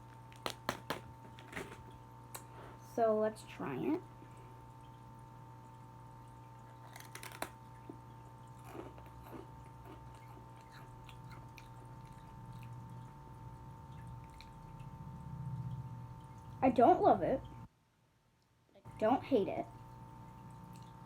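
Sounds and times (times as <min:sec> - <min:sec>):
person chewing: 0:06.5 - 0:13.1
rice cracker crunching: 0:06.6 - 0:08.0.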